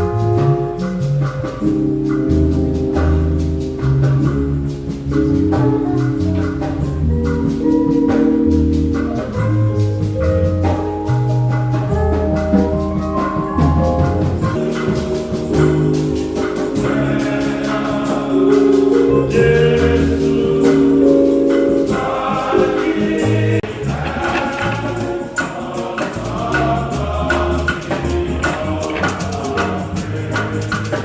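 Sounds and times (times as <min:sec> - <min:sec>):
moving bass line: 0:00.0 - 0:31.0
steady percussion beating: 0:00.0 - 0:31.0
choir singing a hymn: 0:11.7 - 0:31.0.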